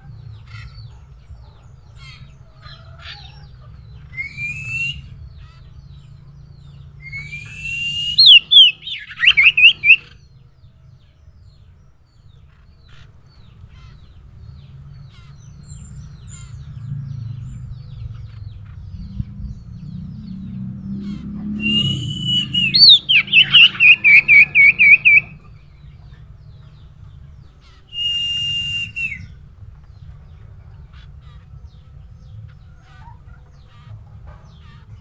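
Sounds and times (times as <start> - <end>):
bird whistling calls: 4.1 - 5.2, 7.0 - 10.1, 21.5 - 25.5, 27.8 - 29.3.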